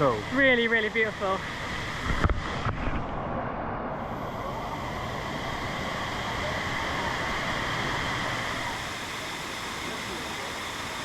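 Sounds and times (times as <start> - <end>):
waterfall roaring: 4.0 - 10.9.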